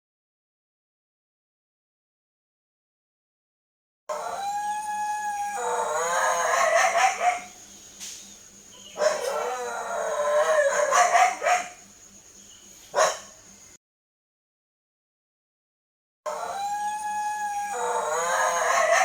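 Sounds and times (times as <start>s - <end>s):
dog howling: 4.1s - 7.6s, 9.0s - 11.7s, 16.3s - 19.0s.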